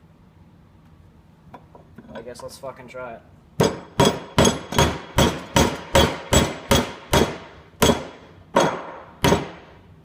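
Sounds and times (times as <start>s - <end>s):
hammer driving nail into wood: 3.6s - 9.8s.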